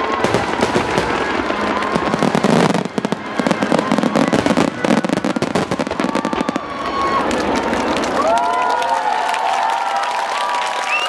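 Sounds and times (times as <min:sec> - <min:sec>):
fireworks whistling: 0:00.0 - 0:08.0
fireworks crackling: 0:00.0 - 0:09.5.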